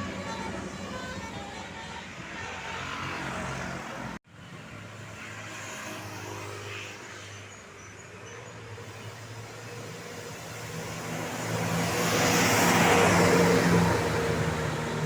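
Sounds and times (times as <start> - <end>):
low engine hum: 0.0 - 2.8, 8.8 - 15.0
passing traffic: 0.0 - 15.0.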